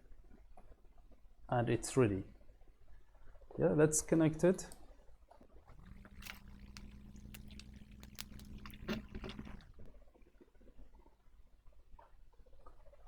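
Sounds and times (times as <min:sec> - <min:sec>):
low steady hum: 0:05.7 - 0:09.9.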